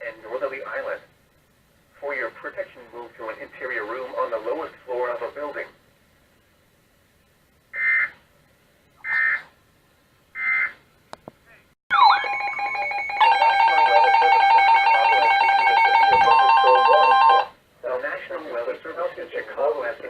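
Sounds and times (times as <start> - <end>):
loud electronic tune: 11.9 - 17.5.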